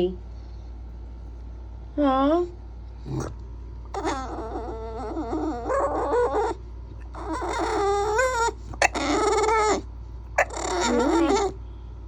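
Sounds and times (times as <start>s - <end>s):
puppy whining and howling: 3.9s - 11.6s.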